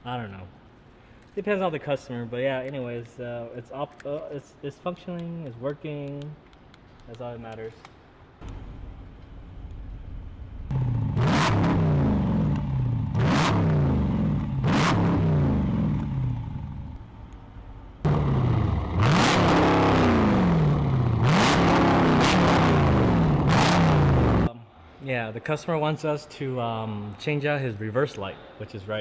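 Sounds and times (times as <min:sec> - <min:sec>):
car engine revving: 0:08.4 - 0:24.5.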